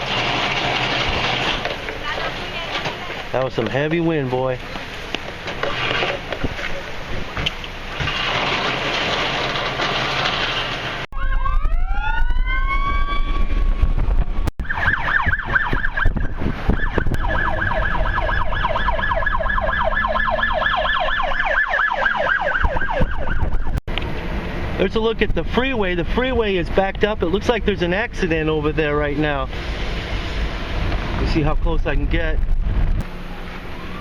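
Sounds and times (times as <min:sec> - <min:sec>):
emergency siren wailing and yelping: 0:11.2 - 0:14.0, 0:14.6 - 0:23.8, 0:33.1 - 0:34.0
wind on microphone: 0:11.2 - 0:21.5, 0:22.2 - 0:23.8, 0:30.1 - 0:33.1.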